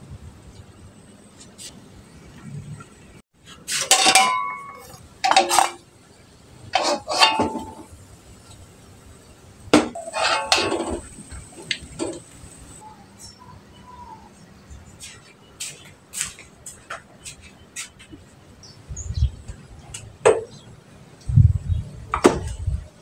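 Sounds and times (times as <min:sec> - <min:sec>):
dishes and utensils clattering: 0:03.8 - 0:05.8, 0:06.8 - 0:07.9, 0:09.8 - 0:12.3.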